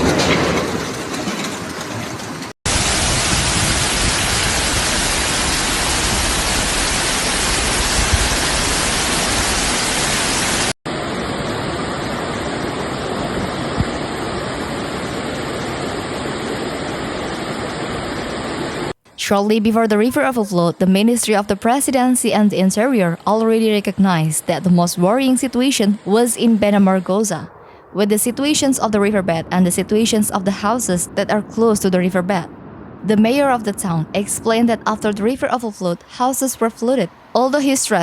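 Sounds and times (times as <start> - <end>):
floodwater rushing: 2.7 - 18.9.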